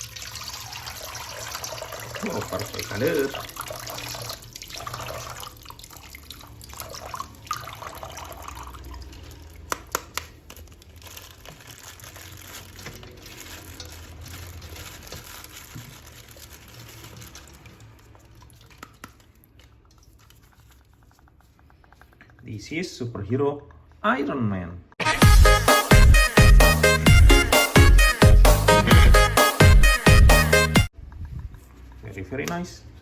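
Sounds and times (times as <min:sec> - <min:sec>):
water running and splashing: 0:00.0 - 0:09.7, 0:10.9 - 0:20.5.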